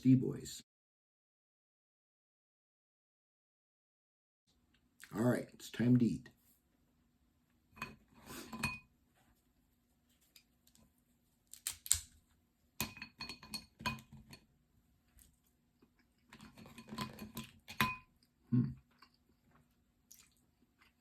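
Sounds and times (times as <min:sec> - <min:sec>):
cutlery and dishes clinking: 0:07.8 - 0:08.9, 0:12.8 - 0:14.5, 0:16.3 - 0:18.1.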